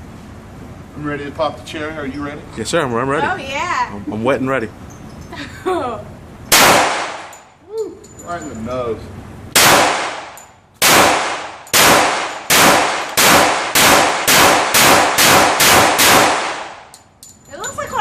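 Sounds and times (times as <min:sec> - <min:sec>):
pistol shots ringing out: 0:06.5 - 0:07.4, 0:09.6 - 0:17.0.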